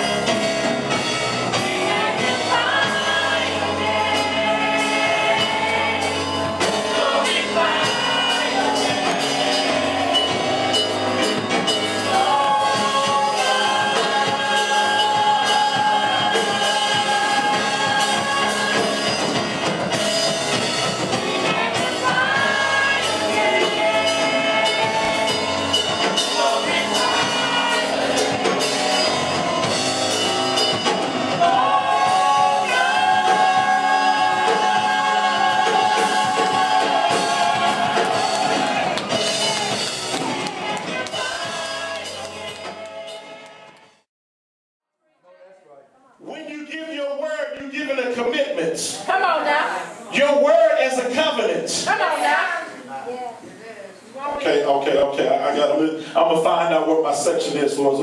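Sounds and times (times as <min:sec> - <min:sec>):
group singing gospel song: 0:00.0 - 0:44.0, 0:48.4 - 0:52.9
instrumental accompaniment: 0:00.0 - 0:44.0.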